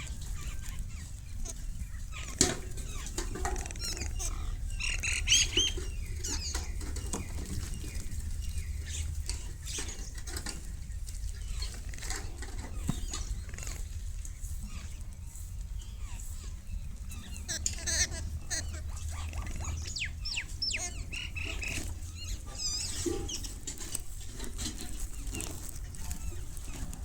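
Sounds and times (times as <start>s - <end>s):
whistled bird calls: 3.7s - 10.0s, 17.1s - 23.4s.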